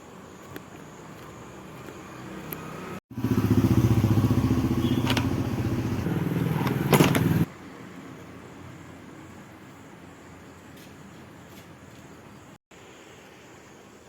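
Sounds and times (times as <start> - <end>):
rotary hammer drill pulsing: 3.1 - 7.5.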